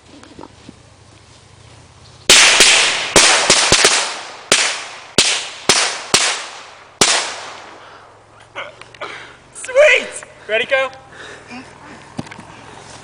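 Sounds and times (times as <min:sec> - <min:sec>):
firecrackers banging: 0:02.3 - 0:08.0.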